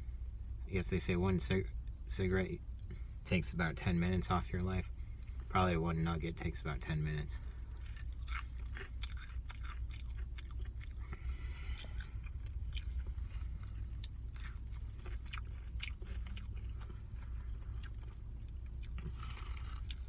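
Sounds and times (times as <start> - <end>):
steady low hum: 0.0 - 20.0
chewing with wet mouth clicks: 7.7 - 20.0.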